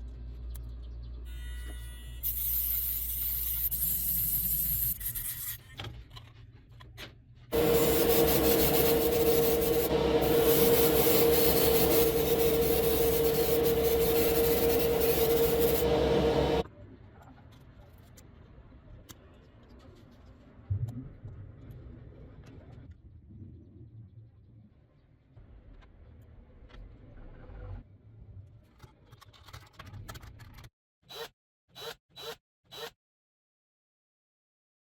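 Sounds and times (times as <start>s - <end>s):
power tool grinding metal: 7.5s - 16.6s.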